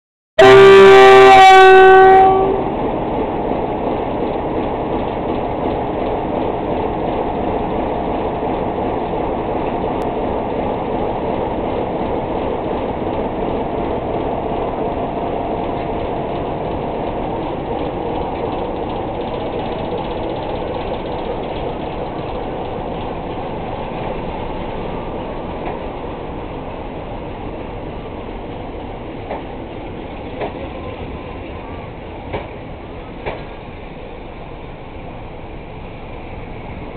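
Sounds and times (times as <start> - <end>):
train horn blast: 0.4 - 2.7
passenger train running: 0.4 - 36.9.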